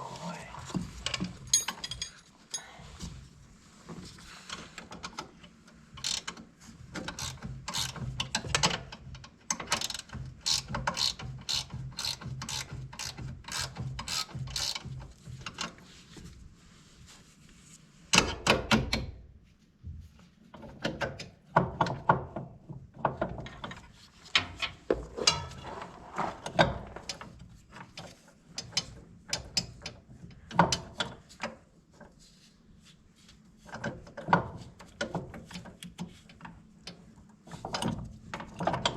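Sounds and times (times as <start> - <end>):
ratchet wrench clicking: 6.0 - 6.3, 7.2 - 8.0, 9.8 - 14.9.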